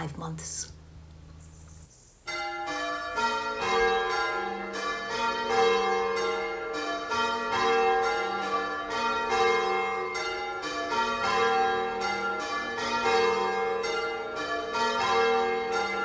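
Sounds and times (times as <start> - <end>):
church bells ringing: 2.3 - 16.0.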